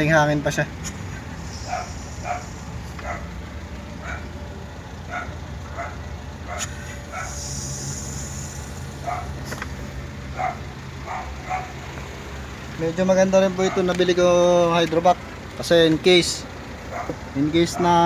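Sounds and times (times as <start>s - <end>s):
steady low hum: 0.6s - 12.8s
dog barking: 1.6s - 3.4s, 4.0s - 4.3s, 5.1s - 7.4s, 9.0s - 9.4s, 10.3s - 11.8s, 13.6s - 14.0s, 16.9s - 18.0s.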